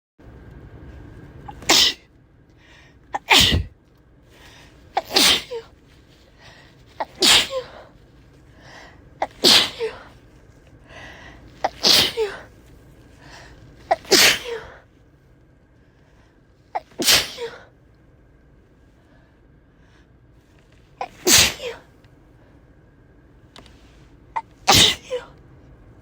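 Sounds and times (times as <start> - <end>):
person sneezing: 1.5 - 2.0, 3.2 - 3.7, 4.9 - 5.7, 6.9 - 7.9, 9.2 - 10.2, 11.6 - 12.5, 13.9 - 14.8, 16.8 - 17.7, 21.0 - 21.9, 24.4 - 25.3.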